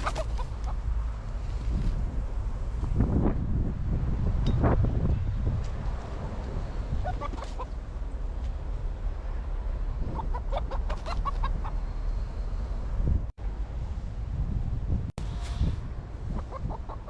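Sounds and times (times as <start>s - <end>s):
chicken clucking: 0.0s - 0.8s, 7.0s - 7.8s, 10.1s - 11.8s, 16.3s - 17.0s
low rumble of wind: 0.0s - 17.0s.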